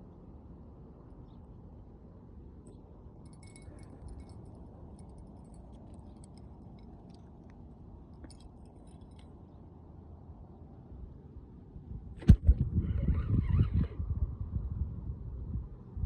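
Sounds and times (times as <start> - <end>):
small clicks and ticks: 3.3 - 9.3.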